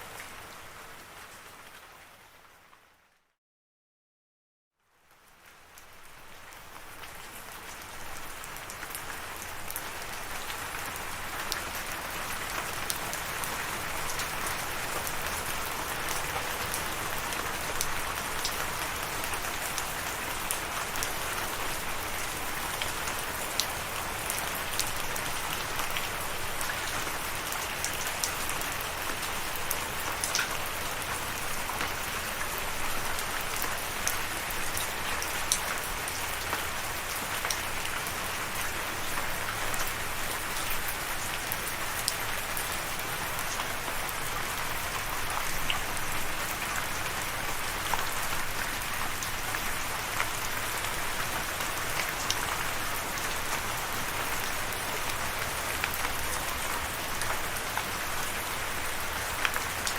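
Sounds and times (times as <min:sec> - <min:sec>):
steady rain falling: 0:00.0 - 0:03.2, 0:04.8 - 0:59.9.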